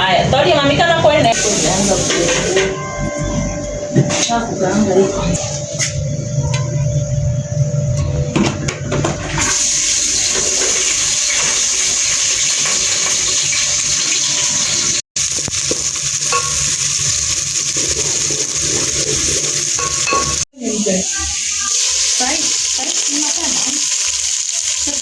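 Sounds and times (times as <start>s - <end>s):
food sizzling in hot oil: 0.2s - 3.4s, 9.2s - 25.0s.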